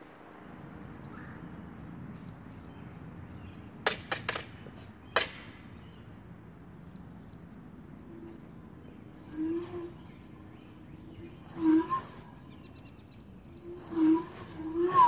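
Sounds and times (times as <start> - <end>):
stick noise maker cracks: 5.2 - 5.6.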